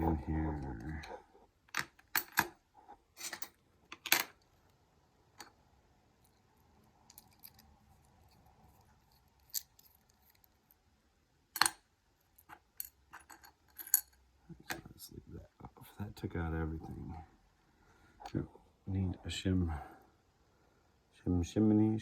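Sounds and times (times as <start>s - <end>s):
small metal clicks and clinks: 7.0s - 10.6s, 12.4s - 14.2s.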